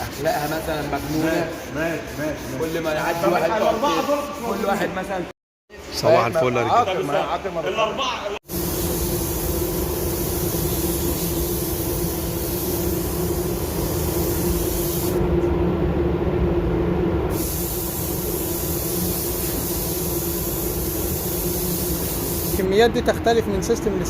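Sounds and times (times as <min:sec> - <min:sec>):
spray gun hissing: 0:08.5 - 0:15.2, 0:17.3 - 0:22.7
low hum: 0:15.2 - 0:17.3.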